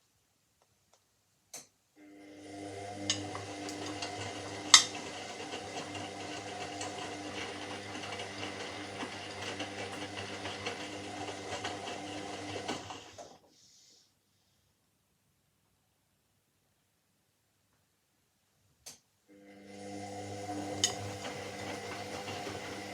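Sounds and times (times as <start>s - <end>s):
washing machine running: 2.0s - 13.4s, 19.3s - 22.9s.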